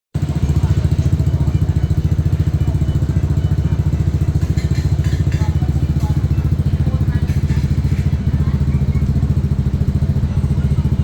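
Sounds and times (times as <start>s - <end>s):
small engine running: 0.2s - 11.0s
faint clatter: 4.2s - 9.4s.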